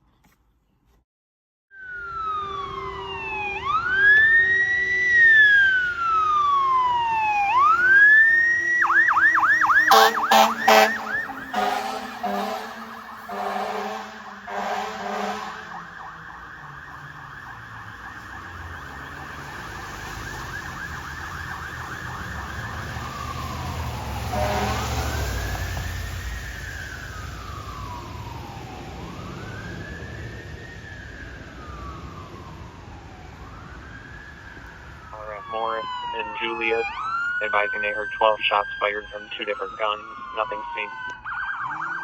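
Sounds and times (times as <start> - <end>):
warbling siren: 1.7 - 42.0
air horn blasts: 9.7 - 15.8, 24.3 - 25.2.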